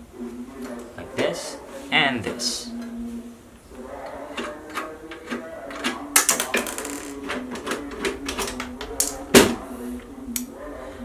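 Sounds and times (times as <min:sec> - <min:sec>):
steady low hum: 0:00.0 - 0:11.0
loud knock: 0:09.1 - 0:09.7.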